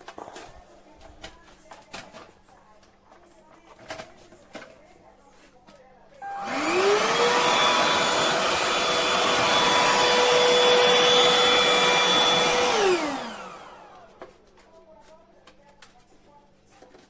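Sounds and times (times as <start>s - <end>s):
stick vacuum motor whine: 6.2s - 14.2s.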